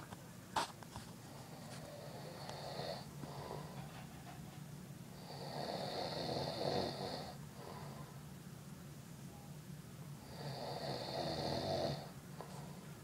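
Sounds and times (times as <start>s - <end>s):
quiet breathing: 1.2s - 8.3s, 10.2s - 13.0s
man snoring: 1.9s - 3.1s, 5.2s - 7.4s, 10.2s - 12.1s.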